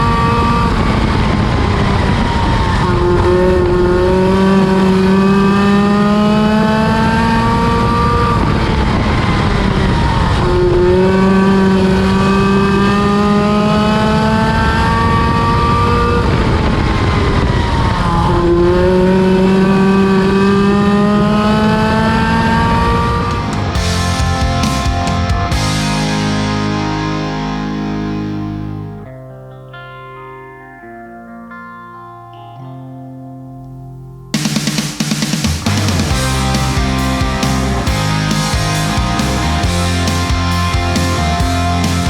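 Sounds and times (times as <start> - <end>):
race car engine at speed: 0.0 - 29.0, 34.4 - 42.0.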